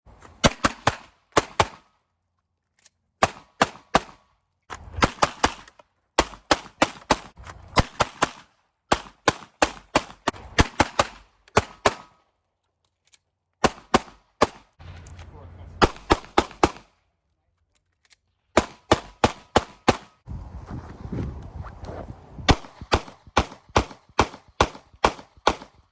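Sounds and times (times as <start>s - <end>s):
pistol shots in rapid strings: 15.8s - 16.9s, 18.6s - 20.1s, 22.5s - 25.9s.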